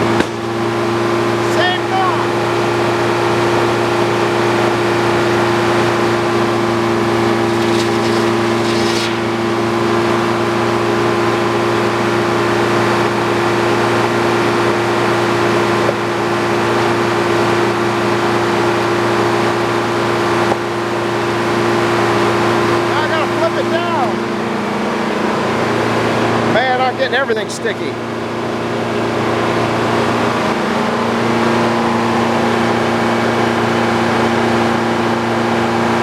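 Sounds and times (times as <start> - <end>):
circular sawmill running: 6.1 - 10.8
burst of high hiss: 7.0 - 10.4.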